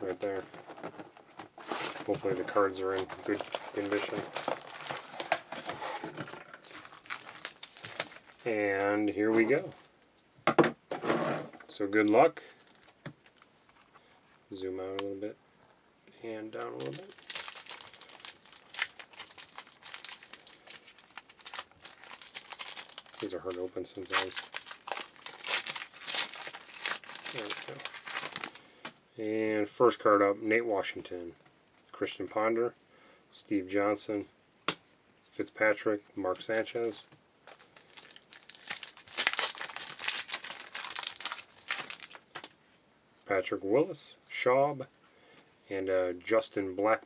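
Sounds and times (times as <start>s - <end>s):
wrapper crinkling and tearing: 0.0s - 8.8s, 12.6s - 13.5s, 16.5s - 28.6s, 36.3s - 42.6s.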